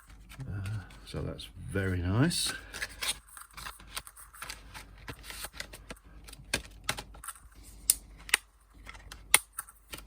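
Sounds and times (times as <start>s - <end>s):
plastic packaging clicks and taps: 2.8s - 10.0s.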